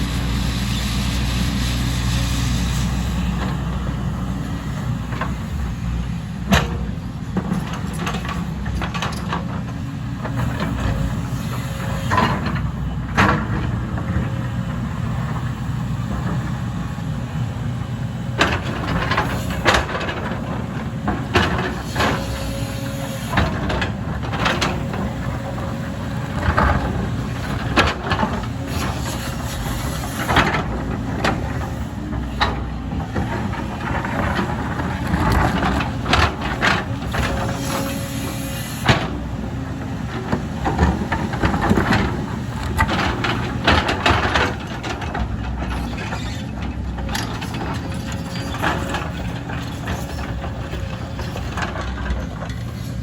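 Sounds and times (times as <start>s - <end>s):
diesel engine running: 0.0s - 53.0s
machine knocks and clanks: 6.4s - 14.4s, 18.2s - 38.0s, 38.8s - 52.9s.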